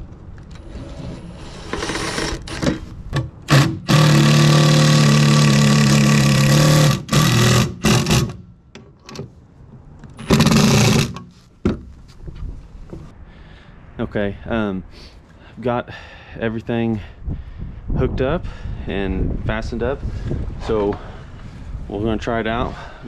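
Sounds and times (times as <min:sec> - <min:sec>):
cordless power driver running: 0:03.5 - 0:08.4, 0:10.2 - 0:11.2.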